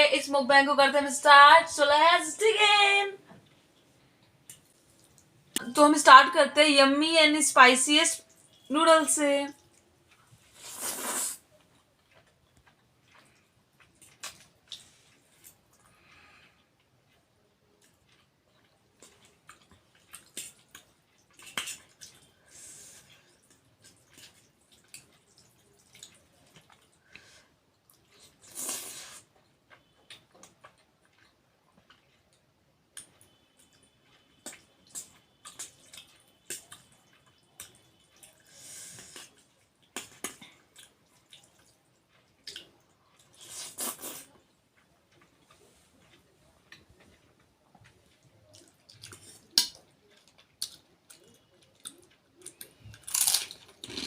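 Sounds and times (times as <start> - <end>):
noodles chewed and slurped: 9.6 - 54.0
noodle slurp: 10.5 - 11.6, 43.4 - 44.4
short hissing slurp: 10.6 - 11.4.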